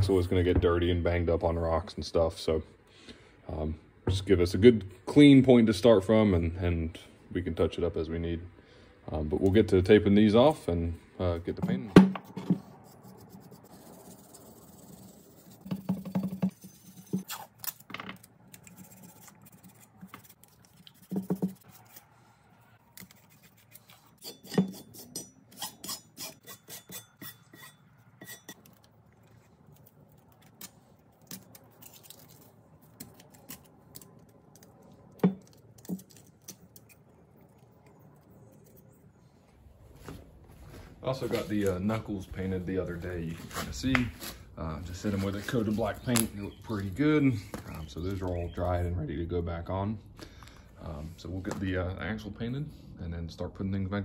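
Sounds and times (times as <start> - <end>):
tape rubbing: 12.5 - 22.1, 42.7 - 48.7
masking tape ripping: 17.1 - 22.1.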